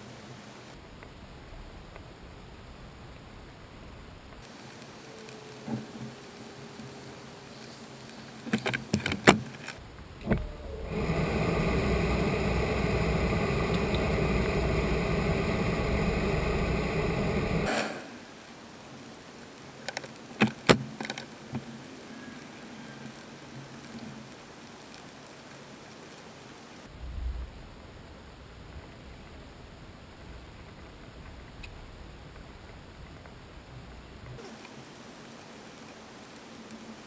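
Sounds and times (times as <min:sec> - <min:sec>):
motor whirring: 0:04.5 - 0:18.4
clicks and knocks: 0:08.5 - 0:10.5.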